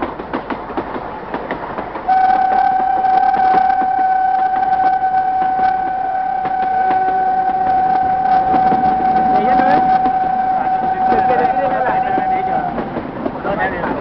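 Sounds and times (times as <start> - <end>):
locomotive horn blast: 2.1 - 12.8.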